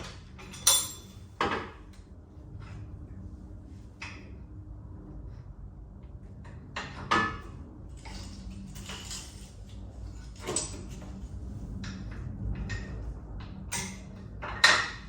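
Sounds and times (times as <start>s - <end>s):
metal clanks and knocks: 0.0s - 1.8s
low steady hum: 0.0s - 15.0s.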